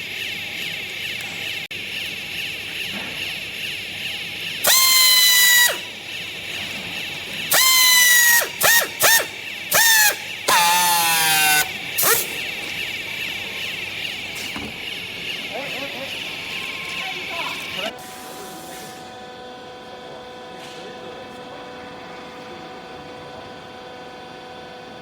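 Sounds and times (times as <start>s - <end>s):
hydraulic baler hiss: 4.5s - 6.2s, 7.5s - 15.4s, 16.0s - 19.2s
high-pitched squeals: 4.6s - 5.9s, 7.5s - 12.4s.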